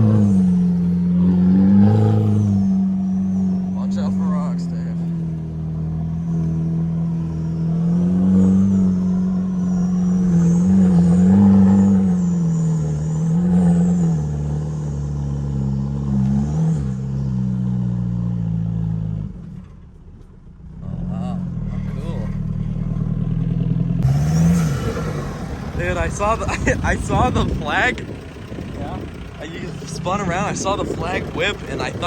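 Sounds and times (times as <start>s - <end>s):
diesel engine revving: 0.0s - 19.8s, 20.6s - 32.0s
faint high whistle: 7.2s - 13.3s.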